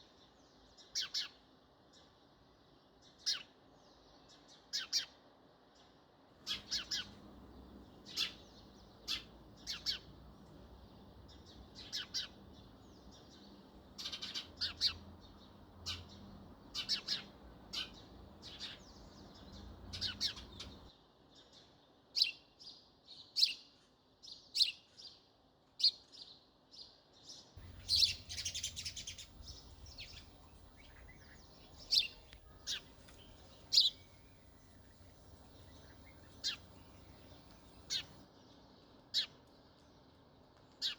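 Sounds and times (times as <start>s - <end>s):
sparrows chirping: 6.4s - 20.9s, 27.6s - 38.2s.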